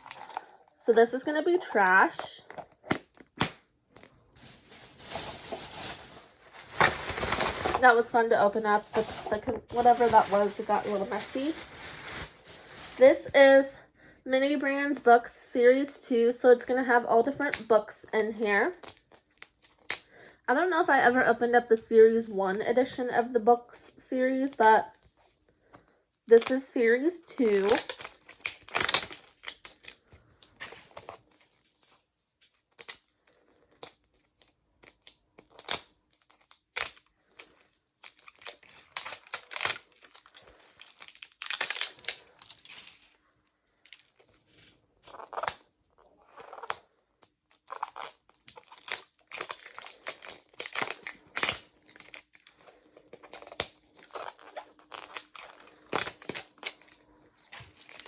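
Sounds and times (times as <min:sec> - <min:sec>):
wrapping rustling and tearing: 0:00.0 - 0:13.6, 0:27.3 - 0:58.0.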